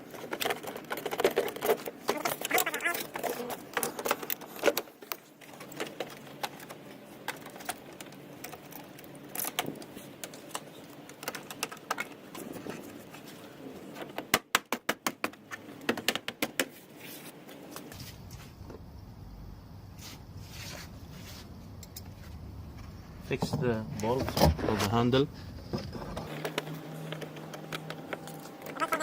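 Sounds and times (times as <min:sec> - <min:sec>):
small parts clicking and rattling: 0:00.0 - 0:14.3.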